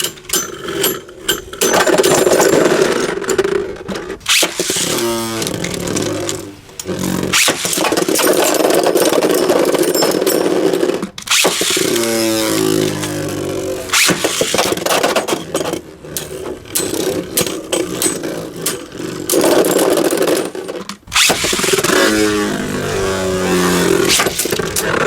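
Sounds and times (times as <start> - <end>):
spinning tops whirring and grinding: 0.0 - 25.0
spinning tops clacking together: 4.3 - 22.2.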